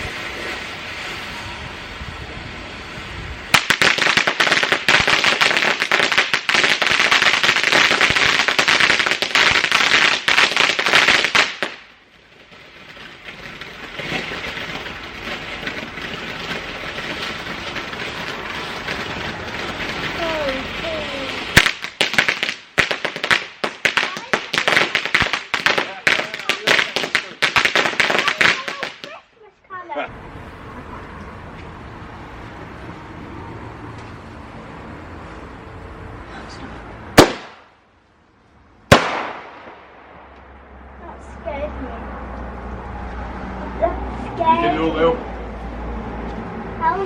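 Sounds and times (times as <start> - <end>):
firework hissing: 0.0 - 29.4, 30.2 - 37.8, 38.9 - 40.2
firework crackling: 0.0 - 29.5, 30.1 - 47.0
sharp bangs: 3.5 - 29.2, 37.1 - 37.8, 38.9 - 40.6.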